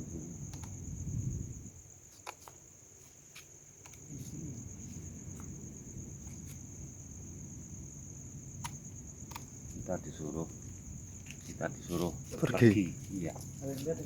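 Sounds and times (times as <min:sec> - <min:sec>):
insects trilling: 0:00.0 - 0:14.0
light clicks: 0:00.5 - 0:00.8.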